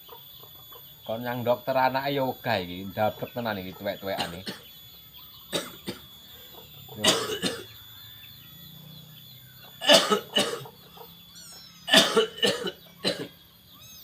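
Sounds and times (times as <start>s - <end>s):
man coughing: 4.2s - 4.7s, 5.5s - 6.1s, 7.0s - 7.7s, 9.8s - 10.7s, 11.9s - 13.3s.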